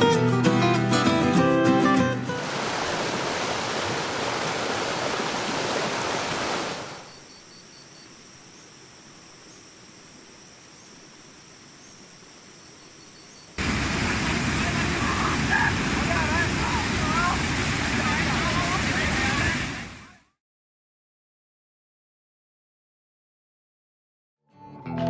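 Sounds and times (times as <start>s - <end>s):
acoustic guitar music: 0.0s - 2.5s, 24.5s - 25.0s
waterfall rushing: 2.3s - 7.1s, 13.6s - 20.1s
faint hiss: 2.4s - 19.9s.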